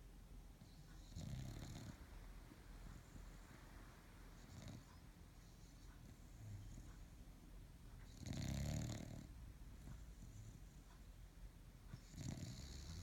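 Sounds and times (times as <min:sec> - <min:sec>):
dog snoring: 0:00.6 - 0:02.0, 0:04.4 - 0:07.2, 0:08.0 - 0:10.9, 0:12.0 - 0:13.0
dog breathing quietly: 0:02.8 - 0:11.2, 0:11.8 - 0:13.0.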